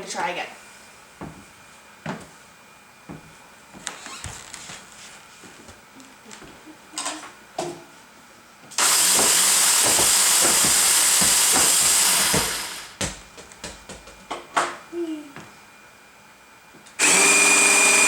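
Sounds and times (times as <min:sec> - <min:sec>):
robot intake motors running: 0:08.8 - 0:13.0
balls knocking: 0:09.3 - 0:14.5.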